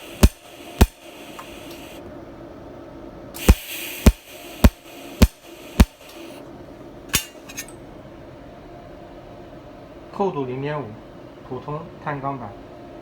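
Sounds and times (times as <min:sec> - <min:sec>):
tool striking steel sheet: 0:00.0 - 0:01.8, 0:03.4 - 0:06.2, 0:07.1 - 0:07.8
steady hiss: 0:00.0 - 0:02.1, 0:03.3 - 0:06.5.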